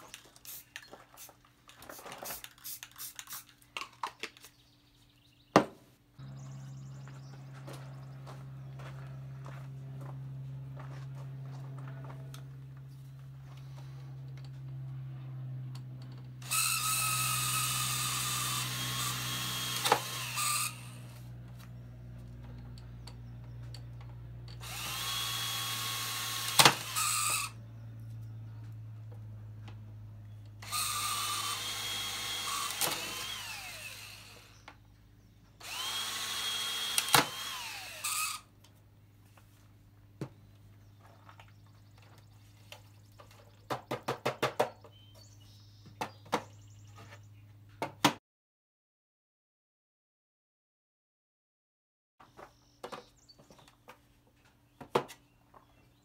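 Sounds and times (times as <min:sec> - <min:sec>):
electric drill whining: 0:15.8 - 0:21.7, 0:24.5 - 0:27.6, 0:30.6 - 0:34.7, 0:35.6 - 0:38.5.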